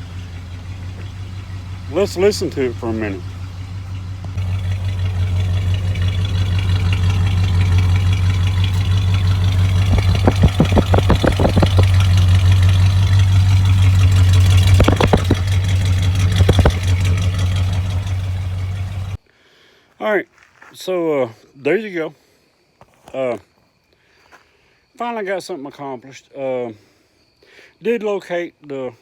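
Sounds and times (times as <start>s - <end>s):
truck engine idling: 0.0s - 19.2s
sharp clicks: 6.4s - 12.2s, 14.0s - 17.6s.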